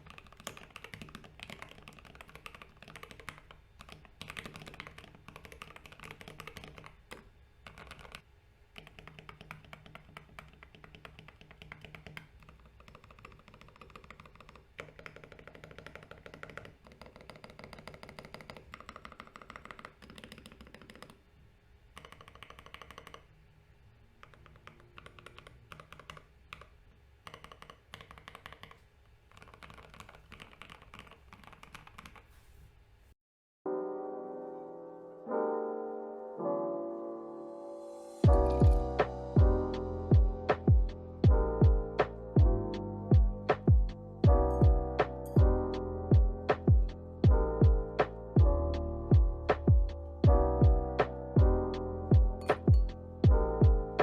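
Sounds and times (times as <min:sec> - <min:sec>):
typing on mechanical keyboard: 0:00.0 - 0:08.2, 0:08.8 - 0:21.2, 0:21.9 - 0:23.3, 0:24.2 - 0:32.3.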